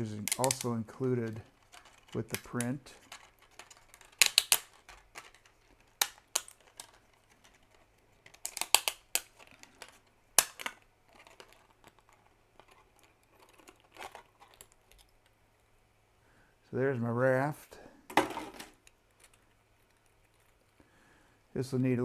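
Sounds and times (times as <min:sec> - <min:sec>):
plastic cracking and clicking: 0:00.0 - 0:15.4.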